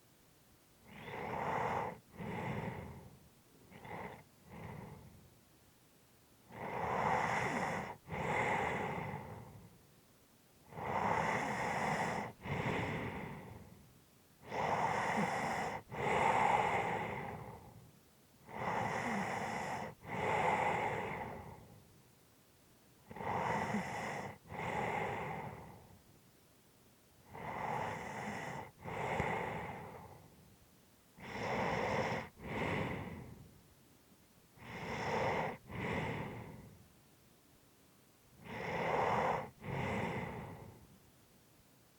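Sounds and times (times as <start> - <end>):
person breathing heavily: 0.9 - 5.2, 10.8 - 13.8, 14.5 - 17.8, 27.3 - 30.4, 31.2 - 33.5, 34.6 - 36.8, 38.4 - 40.9.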